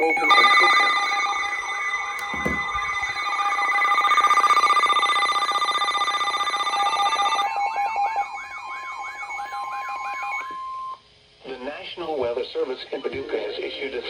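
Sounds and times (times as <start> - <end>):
steady electronic tones: 0.0 - 10.4
warbling alarm: 0.0 - 11.0.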